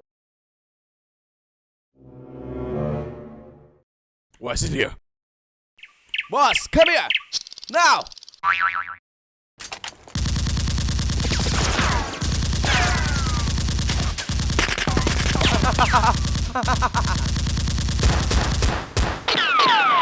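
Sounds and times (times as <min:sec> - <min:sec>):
automatic gunfire: 0:10.2 - 0:19.9.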